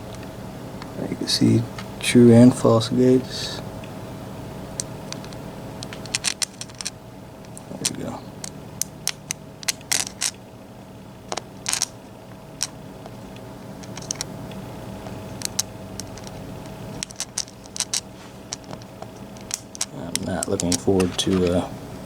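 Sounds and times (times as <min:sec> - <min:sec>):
faint steady hum: 0:00.0 - 0:22.0
small metal parts clicking: 0:05.1 - 0:10.4, 0:11.3 - 0:12.0, 0:12.6 - 0:12.8, 0:13.8 - 0:14.3, 0:15.0 - 0:21.6.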